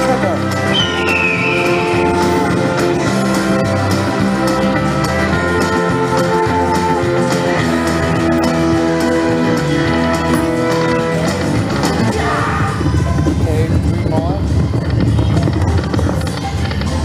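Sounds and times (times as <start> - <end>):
slot machine game music: 0.2 - 11.2.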